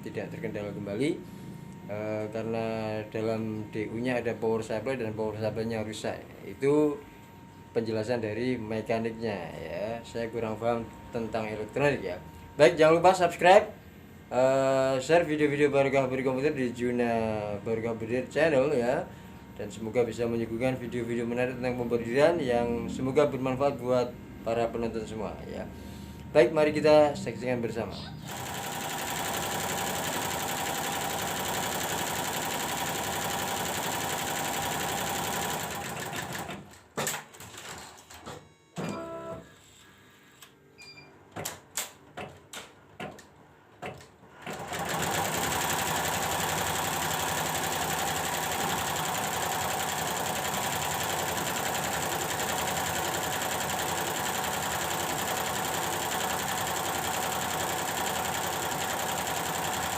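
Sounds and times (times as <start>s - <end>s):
embroidery machine stitching: 28.3s - 36.7s, 44.3s - 59.9s.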